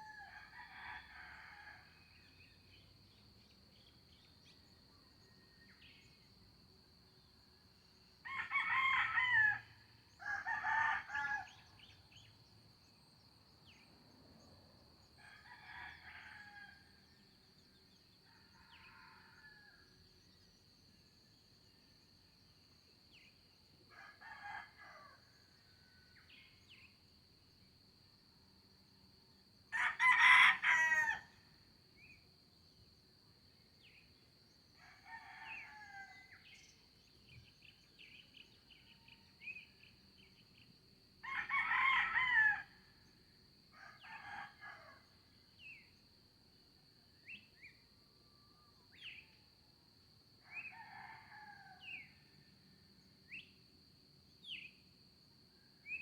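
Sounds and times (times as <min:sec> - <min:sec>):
rooster crowing: 0:08.2 - 0:11.6, 0:29.7 - 0:31.3, 0:41.2 - 0:42.7
distant roosters crowing: 0:29.7 - 0:31.3, 0:41.2 - 0:42.7.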